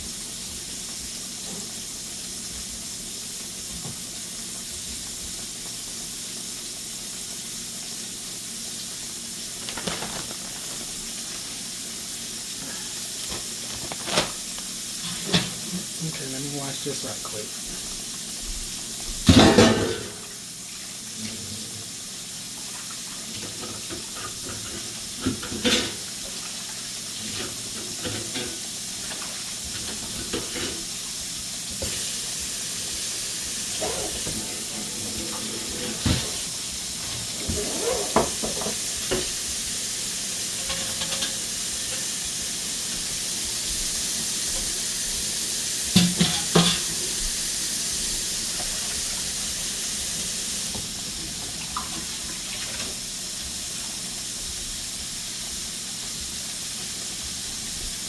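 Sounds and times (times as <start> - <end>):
food sizzling in hot oil: 0.0 - 58.0
sink tap running: 0.0 - 58.0
dishes clattering: 19.2 - 20.4, 23.3 - 26.4, 27.2 - 30.9, 33.7 - 39.4, 40.6 - 42.1, 45.9 - 47.2.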